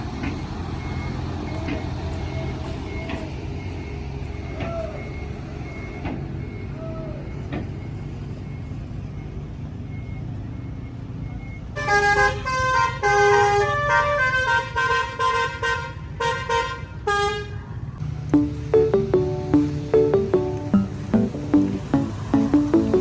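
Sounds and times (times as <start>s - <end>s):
reversing alarm beeping: 0.0s - 6.8s, 18.4s - 23.0s
diesel bus engine running: 0.0s - 9.7s, 18.0s - 23.0s.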